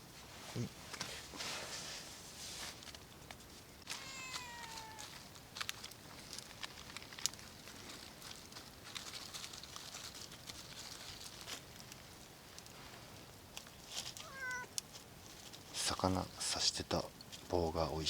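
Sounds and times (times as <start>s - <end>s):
cat meowing: 3.9s - 5.2s, 14.2s - 14.7s
sharp clicks and cracks: 5.6s - 12.7s.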